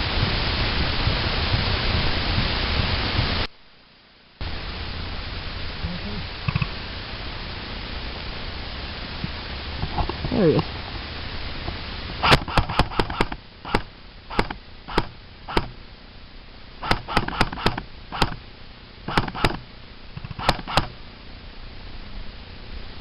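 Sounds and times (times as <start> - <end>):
airsoft gun firing shots: 12.2 - 15.8, 16.8 - 18.4, 19.1 - 21.0.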